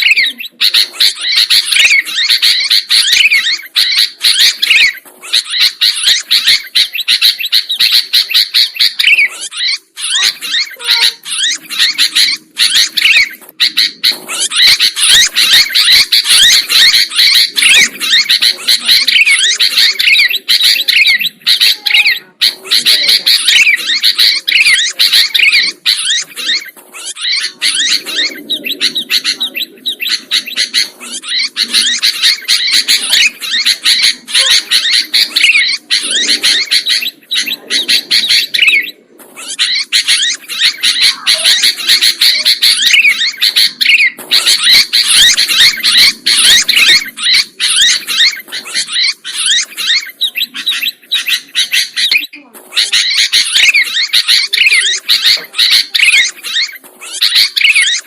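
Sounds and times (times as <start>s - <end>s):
bulbuls chirping: 0.0s - 58.0s.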